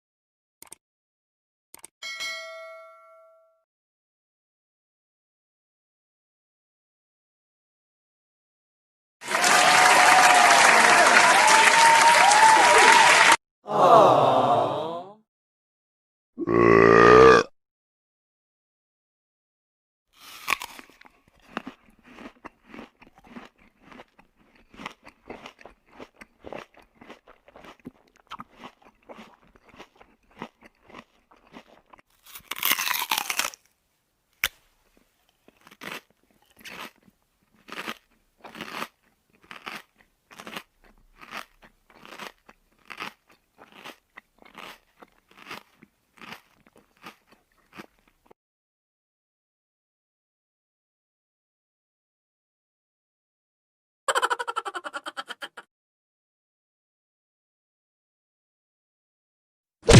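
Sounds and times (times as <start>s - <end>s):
crunchy chewing: 20.2s - 33.8s, 34.4s - 48.4s.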